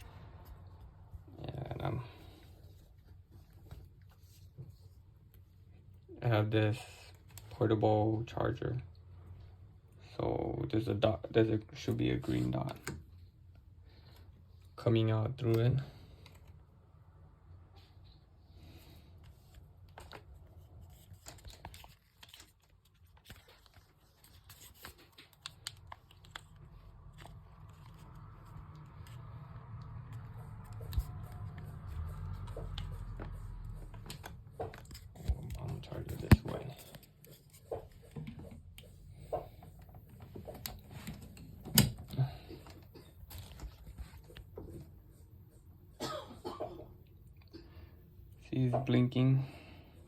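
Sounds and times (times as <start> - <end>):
plastic clicks and handling noises: 21.0 - 29.2.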